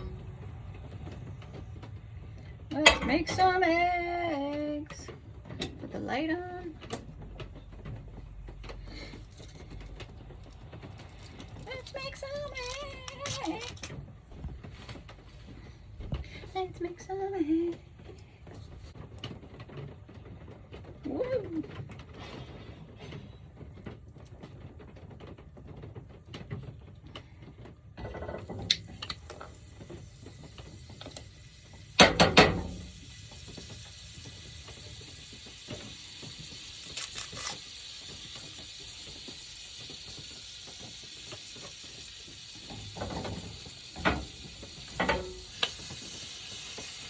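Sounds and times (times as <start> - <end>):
cooking clicks and clatter: 0.0 - 14.1, 23.6 - 47.0
frying sizzle: 28.0 - 47.0.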